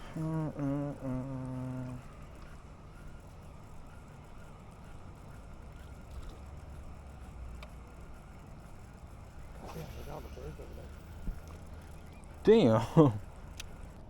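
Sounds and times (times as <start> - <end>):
faint clicks: 7.5 - 7.8.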